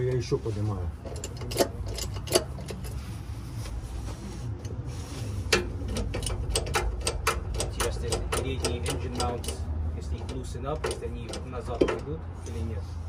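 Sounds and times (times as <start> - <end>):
sharp clicks and metallic knocks: 1.0 - 3.0, 5.4 - 12.6.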